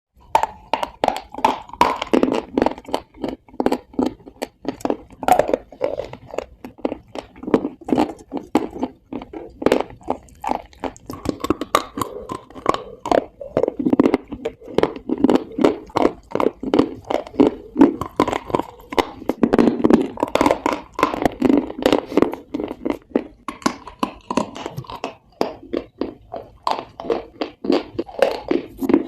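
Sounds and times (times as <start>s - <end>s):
person chewing crunchy material: 0.2s - 29.0s.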